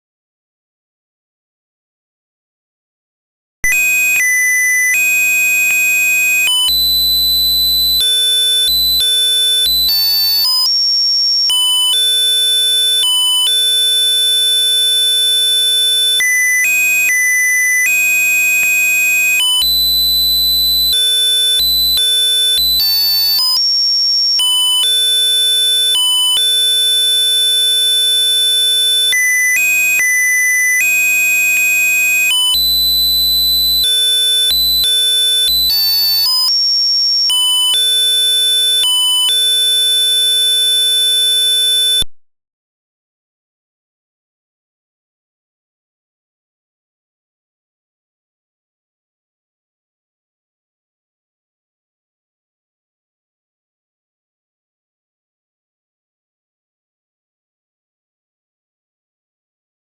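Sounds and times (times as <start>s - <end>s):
pc speaker beeping tune: 32.2s - 42.2s.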